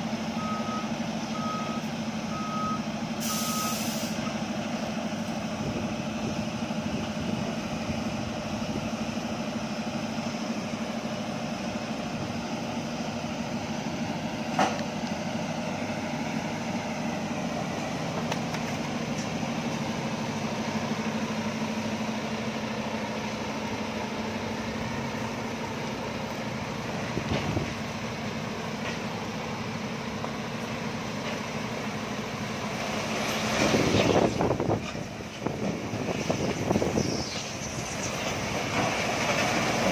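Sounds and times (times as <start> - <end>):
diesel engine idling: 0.0 - 33.3.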